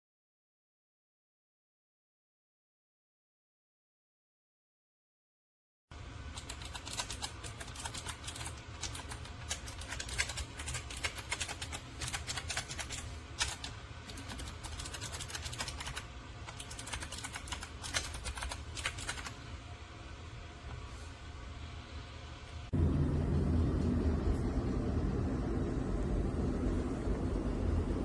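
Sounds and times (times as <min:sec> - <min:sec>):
low steady hum: 0:05.9 - 0:28.0.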